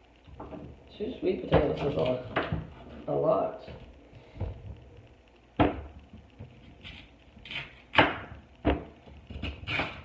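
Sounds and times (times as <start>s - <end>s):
knife chopping sweet potato: 6.8s - 10.0s.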